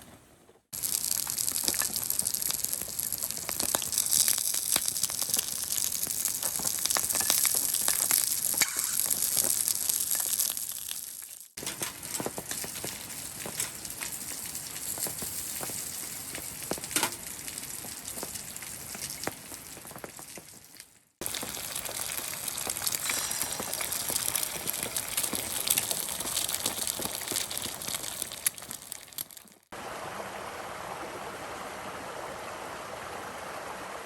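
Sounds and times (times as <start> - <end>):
campfire crackling and popping: 0.8 - 29.8.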